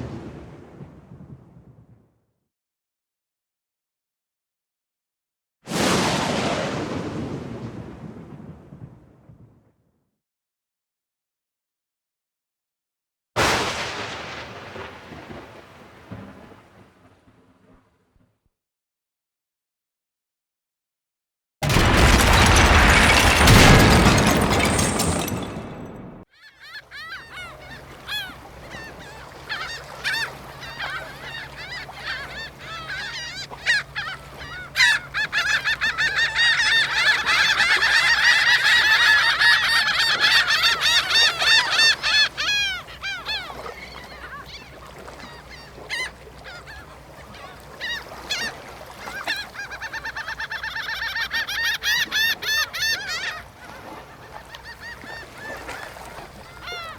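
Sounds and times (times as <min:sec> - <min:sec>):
geese honking: 0:26.7 - 0:56.9.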